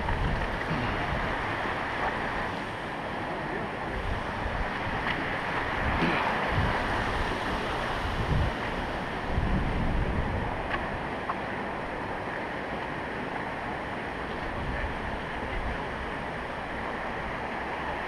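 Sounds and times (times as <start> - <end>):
wind buffeting microphone: 0.0 - 3.0, 3.6 - 12.0
creek water rushing: 0.0 - 18.0.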